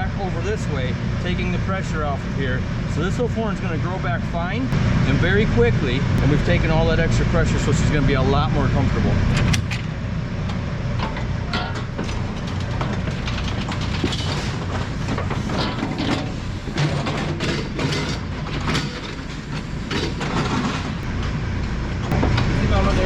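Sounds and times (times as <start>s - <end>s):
low mechanical hum: 0.0s - 23.0s
knocks and clatter: 11.0s - 21.4s.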